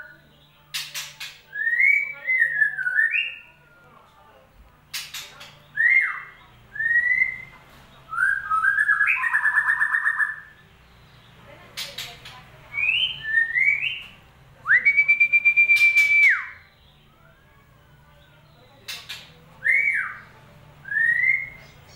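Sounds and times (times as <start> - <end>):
bird song whistles and trills: 0.0 - 3.9, 4.9 - 12.1, 12.7 - 17.4, 18.9 - 21.9.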